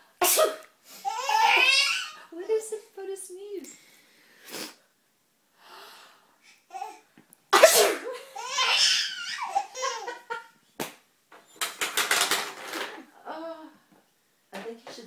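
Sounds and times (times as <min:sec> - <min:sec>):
person sneezing: 0:07.5 - 0:08.2
baby giggling: 0:08.2 - 0:10.5.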